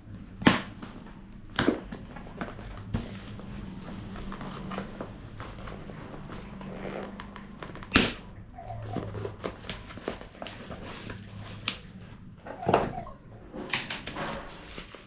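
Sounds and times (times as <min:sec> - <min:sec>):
phone packaging clicks and rustles: 0:09.0 - 0:12.3.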